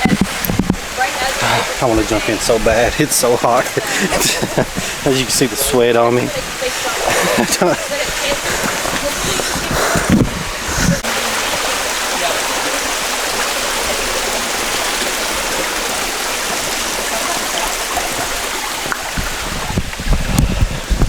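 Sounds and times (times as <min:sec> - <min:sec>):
low thuds: 0:00.0 - 0:03.2, 0:08.0 - 0:11.1
water rushing over rocks: 0:00.0 - 0:21.0.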